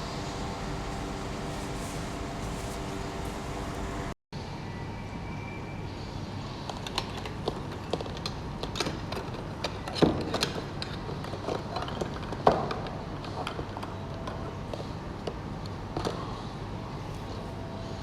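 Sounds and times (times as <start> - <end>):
steady low hum: 0.0 - 4.2.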